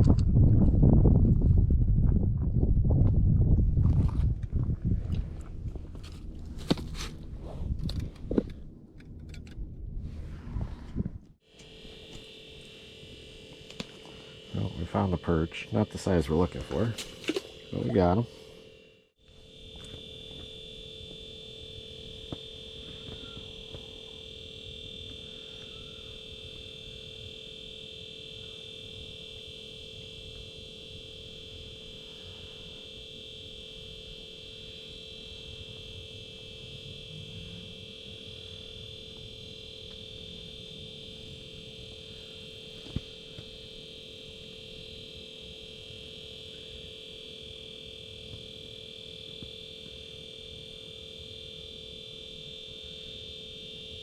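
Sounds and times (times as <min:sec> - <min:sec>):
steady two-pitch electronic tone: 0:11.4 - 0:54.0.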